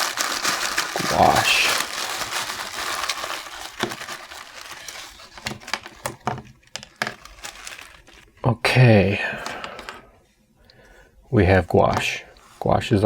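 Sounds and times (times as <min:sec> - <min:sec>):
packaging rustling and crinkling: 0:00.0 - 0:08.5.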